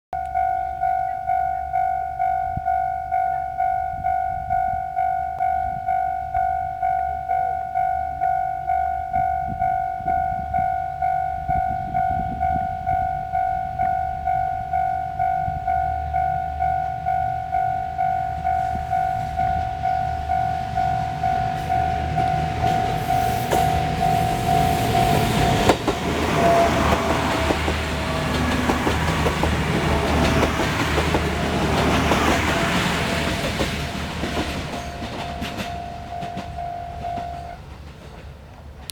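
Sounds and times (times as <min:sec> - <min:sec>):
level-crossing alarm ringing: 0:00.2 - 0:37.7
diesel train rumbling: 0:09.2 - 0:38.9.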